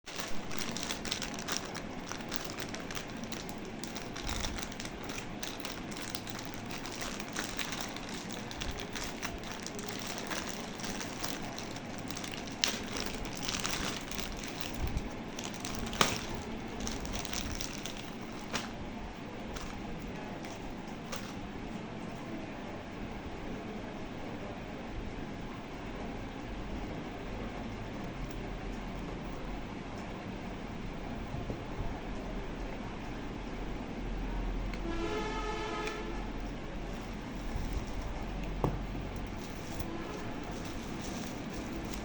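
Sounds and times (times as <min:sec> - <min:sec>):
packaging crinkling and rustling: 0:00.0 - 0:21.4, 0:36.4 - 0:42.0.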